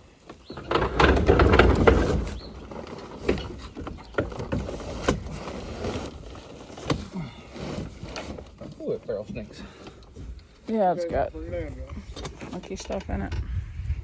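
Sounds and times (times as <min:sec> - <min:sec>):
plastic barrel scraping: 0:00.0 - 0:14.0
hollow knocks and clunks: 0:00.3 - 0:10.4.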